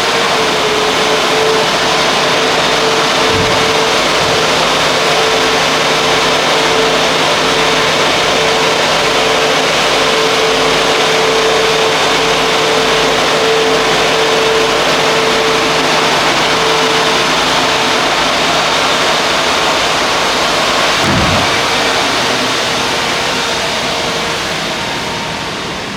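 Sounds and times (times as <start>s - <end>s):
van engine running: 21.0s - 22.7s.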